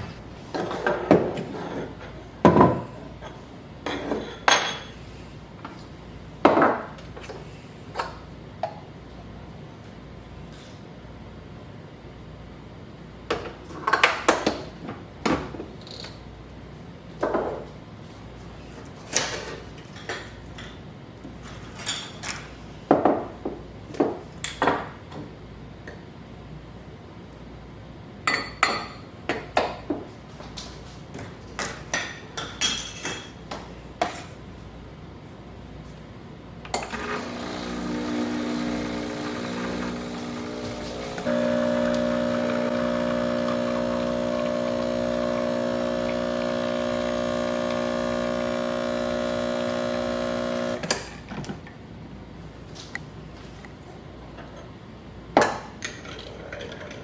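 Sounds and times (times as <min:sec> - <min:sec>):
steady machine hum: 0:36.9 - 0:50.9.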